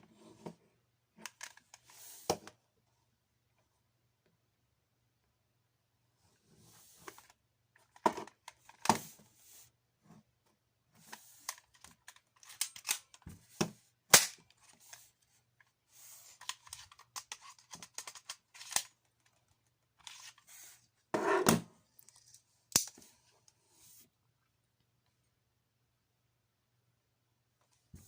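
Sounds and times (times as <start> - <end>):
pistol parts clicking and clacking: 12.1 - 13.2, 16.5 - 18.9.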